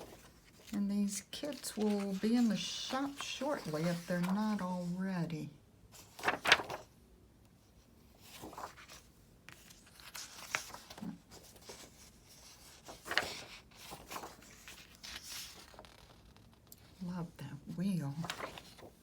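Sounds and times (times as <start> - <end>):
paper crinkles: 0.0 - 5.0, 6.0 - 6.9, 8.2 - 17.0, 18.1 - 19.0
paper rustling and sliding: 0.0 - 5.0, 6.0 - 6.9, 8.0 - 17.0, 18.1 - 19.0.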